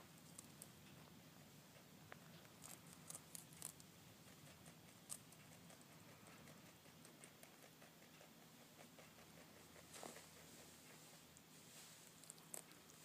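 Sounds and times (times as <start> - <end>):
rabbit chewing greens: 0.0 - 13.0.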